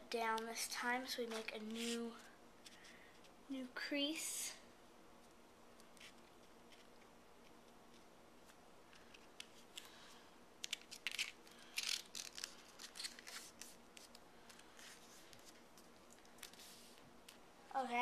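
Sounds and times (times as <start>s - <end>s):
paper rustling and creasing: 1.0s - 2.9s, 7.9s - 18.0s.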